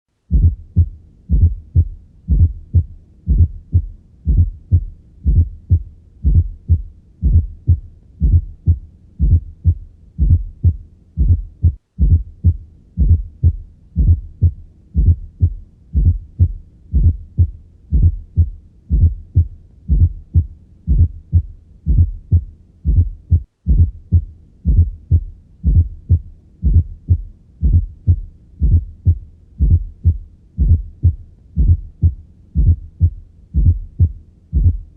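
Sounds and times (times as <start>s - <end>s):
heartbeat through a stethoscope: 0.2s - 34.9s.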